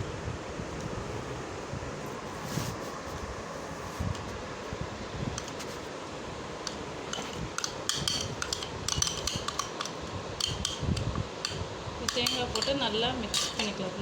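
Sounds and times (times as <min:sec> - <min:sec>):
steady background hiss: 0:00.0 - 0:14.0
spoon clinking against metal bowl: 0:07.1 - 0:10.8, 0:11.4 - 0:13.8.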